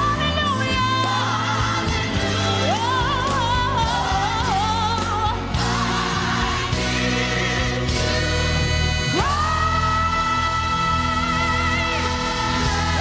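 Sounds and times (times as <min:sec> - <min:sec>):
band and backing choir: 0:00.0 - 0:13.0
lead voice singing: 0:00.0 - 0:13.0.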